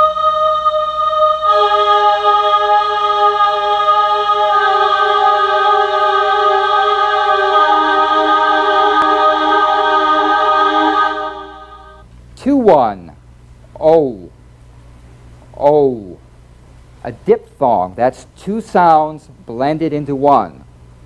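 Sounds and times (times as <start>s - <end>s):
sustained musical chord: 0.0s - 12.0s.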